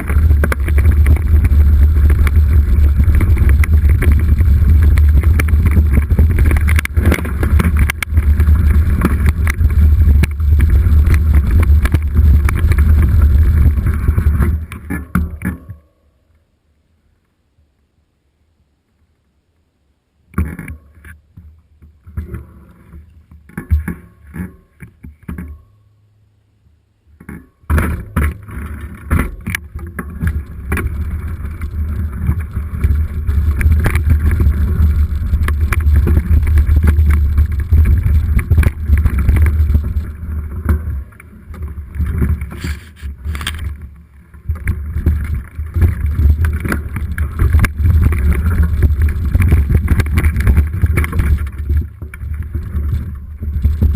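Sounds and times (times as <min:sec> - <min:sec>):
wind rumble on microphone: 0:00.0 - 0:15.5, 0:27.7 - 0:53.9
bike rattling over bumps: 0:00.0 - 0:15.9, 0:27.2 - 0:53.9.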